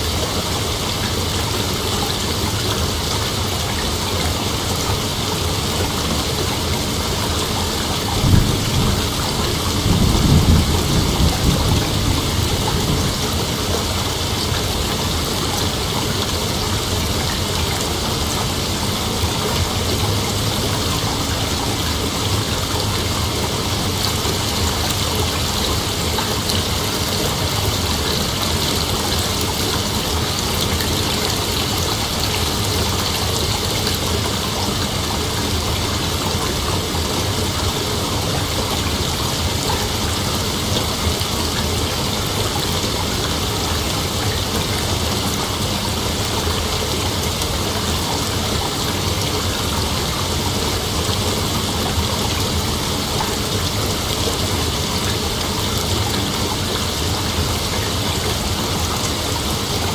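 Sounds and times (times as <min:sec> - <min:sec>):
steady rain hiss: 0:00.0 - 0:59.9
low thunder rumble: 0:07.1 - 0:15.4.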